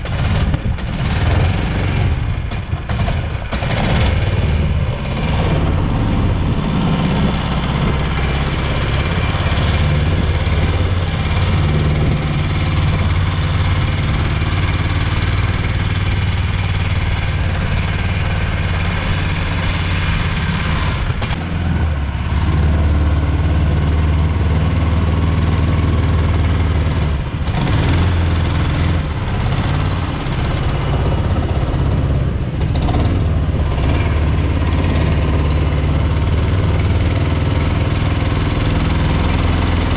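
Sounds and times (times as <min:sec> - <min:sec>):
gas engine running steadily: 0:00.0 - 0:39.9.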